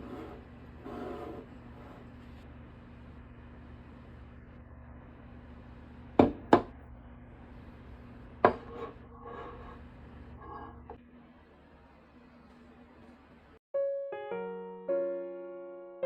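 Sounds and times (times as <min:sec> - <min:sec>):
steady low hum: 0:00.0 - 0:13.6
tableware knocking: 0:08.4 - 0:09.0.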